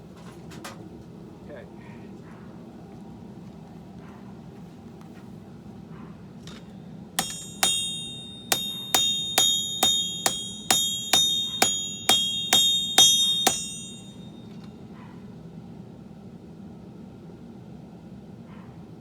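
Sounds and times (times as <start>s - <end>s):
hammer striking blade on anvil: 7.2s - 14.4s.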